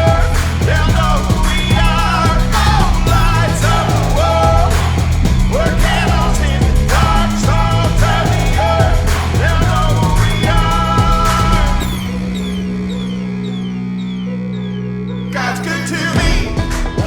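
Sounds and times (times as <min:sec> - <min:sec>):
upbeat song with band: 0:00.0 - 0:13.0, 0:15.4 - 0:17.0.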